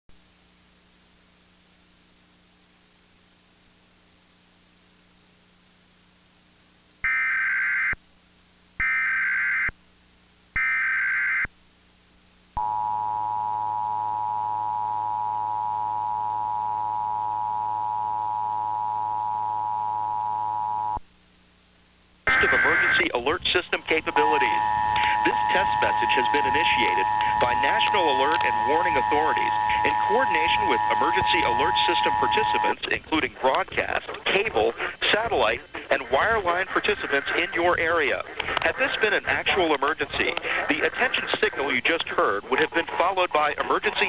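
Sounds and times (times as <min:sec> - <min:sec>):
faint hum: 0:00.1 - 0:44.0
two-tone attention signal: 0:22.3 - 0:23.1, 0:24.0 - 0:32.8
digital data tone bursts: 0:22.3 - 0:32.8.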